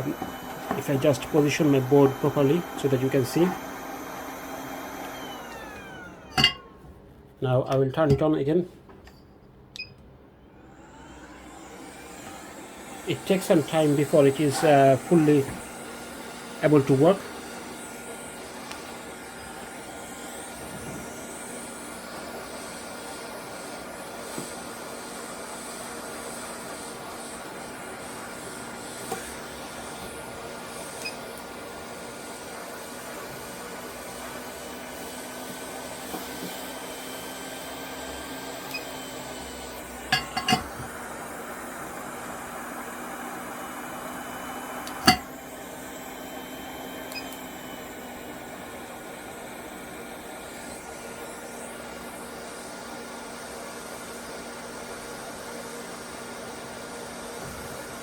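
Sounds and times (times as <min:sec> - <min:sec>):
hot air gun hissing: 0:00.0 - 0:04.1, 0:12.0 - 0:37.2.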